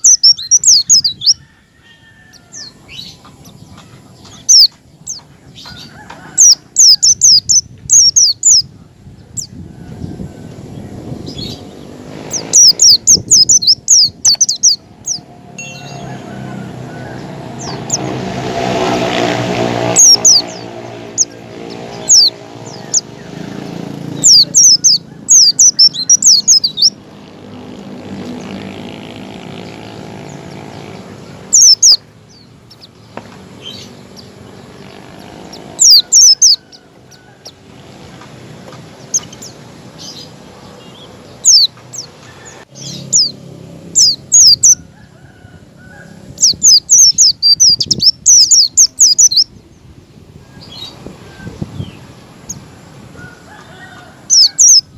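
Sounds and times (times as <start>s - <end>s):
birds chirping: 0.0s - 54.9s.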